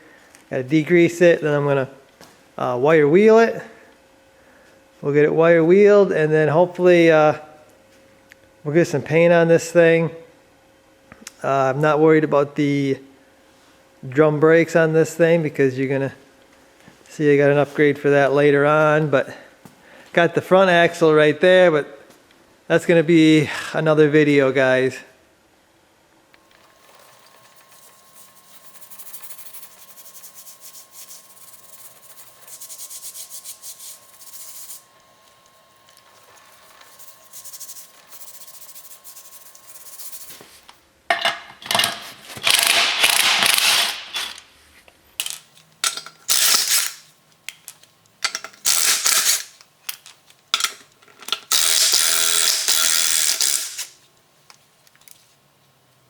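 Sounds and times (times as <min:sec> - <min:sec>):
power tool running in bursts: 0:51.5 - 0:53.9.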